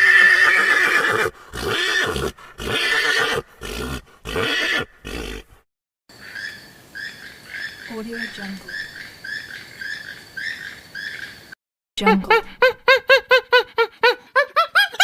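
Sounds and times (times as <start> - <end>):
equine animal calling: 0.0 - 5.6.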